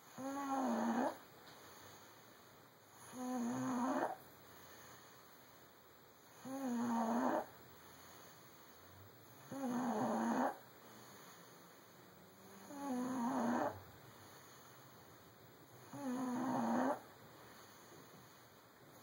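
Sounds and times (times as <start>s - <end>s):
pitched snores: 0.1s - 1.2s, 3.0s - 4.2s, 6.4s - 7.5s, 9.4s - 10.6s, 12.4s - 13.8s, 15.8s - 17.0s.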